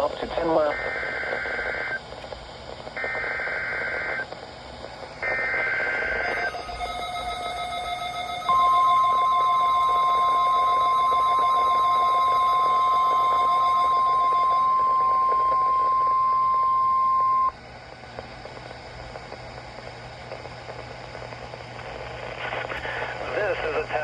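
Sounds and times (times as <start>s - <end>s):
radio hiss: 0.0s - 6.6s, 17.8s - 24.0s
steady alarm tone: 5.2s - 17.6s.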